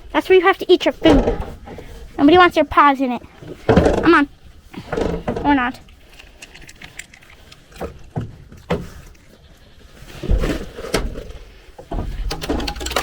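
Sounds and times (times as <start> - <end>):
sharp clicks and knocks: 11.8 - 13.0.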